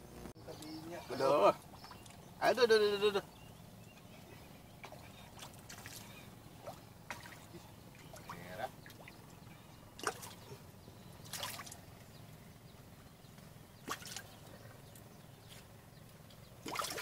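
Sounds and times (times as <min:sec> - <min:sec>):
low steady background noise: 0:00.0 - 0:17.0
water splashing and sloshing: 0:01.4 - 0:02.4, 0:03.6 - 0:12.1, 0:13.2 - 0:17.0.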